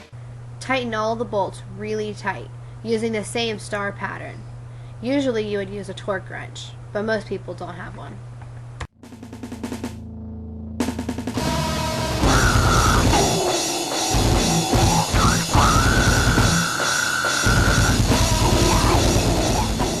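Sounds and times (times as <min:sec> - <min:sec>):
driving drum kit: 0:09.0 - 0:10.1, 0:10.8 - 0:20.0
rock music: 0:09.0 - 0:20.0.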